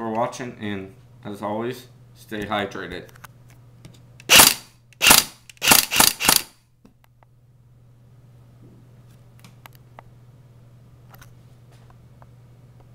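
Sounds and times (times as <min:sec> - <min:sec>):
airsoft gun shots: 0:04.3 - 0:06.5.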